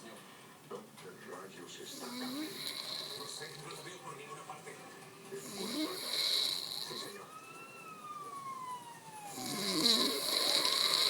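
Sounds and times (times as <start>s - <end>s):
person snoring: 1.9s - 3.3s, 5.4s - 7.2s, 9.3s - 11.0s
siren wailing: 5.6s - 11.0s.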